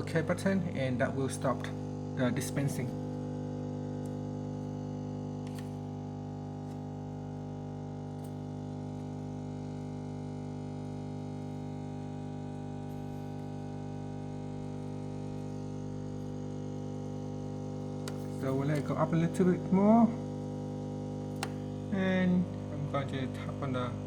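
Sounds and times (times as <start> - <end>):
coffee machine pump humming: 0.0 - 24.0.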